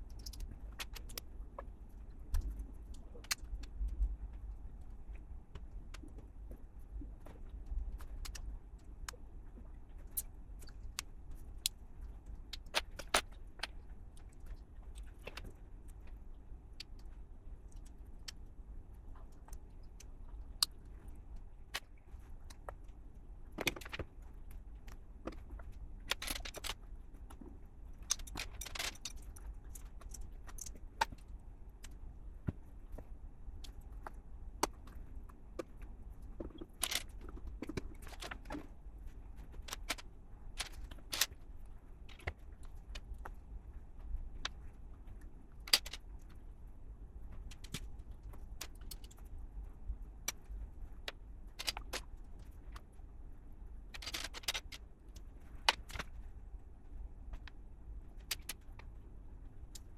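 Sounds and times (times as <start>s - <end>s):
low steady hum: 0.0s - 59.9s
plastic bricks clicking: 25.3s - 26.8s, 28.0s - 31.2s, 36.4s - 38.7s, 39.5s - 40.0s, 45.7s - 46.0s, 51.6s - 52.0s, 53.9s - 54.8s
loose pieces rattling: 26.1s - 26.8s, 28.0s - 31.2s, 36.4s - 38.5s, 45.7s - 46.0s, 51.6s - 52.0s, 53.9s - 54.8s.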